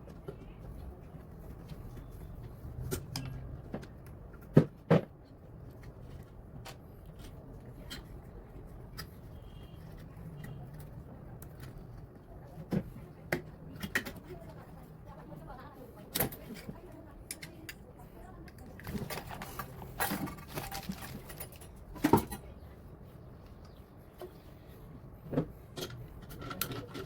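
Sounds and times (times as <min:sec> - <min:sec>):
tools clicking and knocking: 0:25.3 - 0:27.0.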